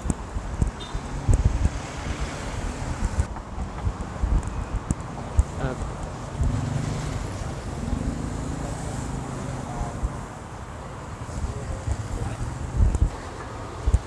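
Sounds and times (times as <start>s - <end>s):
street traffic noise: 0.0s - 14.0s
wind gusts on microphone: 0.0s - 14.0s
vehicle engine passing: 1.0s - 3.3s, 5.5s - 10.4s.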